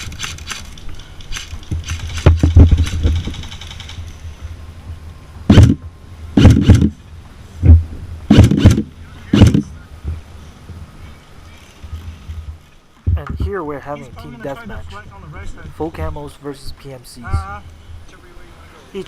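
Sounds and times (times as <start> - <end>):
airsoft rifle firing bursts: 1.3 - 4.0, 5.5 - 5.8, 6.4 - 7.0, 8.3 - 9.6.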